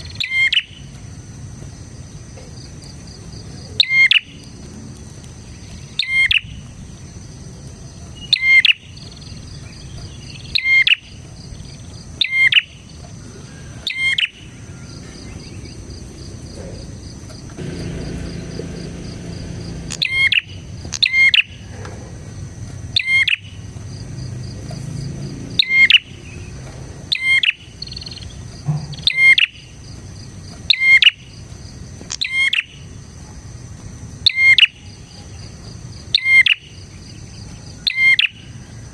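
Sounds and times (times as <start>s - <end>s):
bird sharp calls: 8.0s - 17.0s, 17.6s - 21.8s, 25.5s - 29.8s, 30.6s - 31.4s, 36.1s - 38.7s
low rumble: 17.6s - 20.9s.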